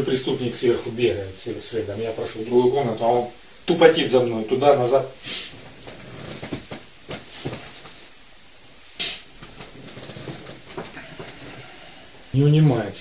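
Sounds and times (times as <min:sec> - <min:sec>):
brief hiss: 0:05.2 - 0:05.6, 0:09.0 - 0:09.3.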